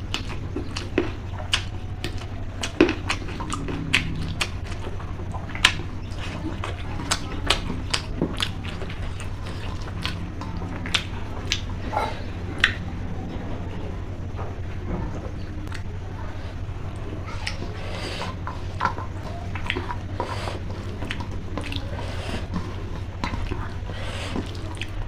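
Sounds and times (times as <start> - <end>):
chewing and lip-smacking: 0.0 - 14.3, 15.2 - 25.0
steady low hum: 0.0 - 25.0.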